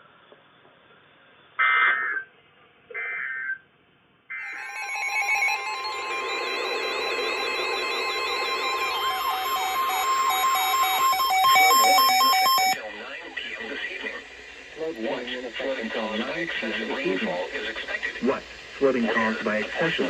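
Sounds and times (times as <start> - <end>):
warbling alert tones: 4.4 - 12.8.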